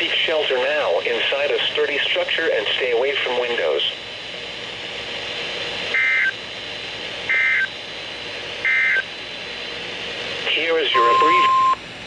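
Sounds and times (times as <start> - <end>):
warbling data tone bursts: 10.9 - 11.8.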